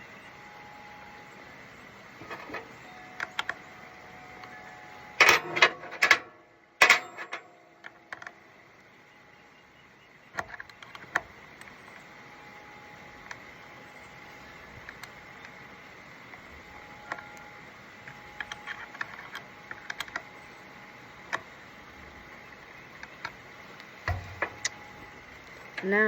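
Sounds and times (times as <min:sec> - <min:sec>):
metal hand tools clattering: 0:05.2 - 0:07.6.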